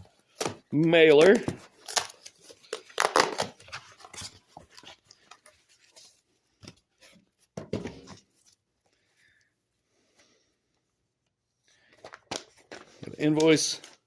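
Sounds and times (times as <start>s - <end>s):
packaging tearing and rustling: 1.2s - 5.5s.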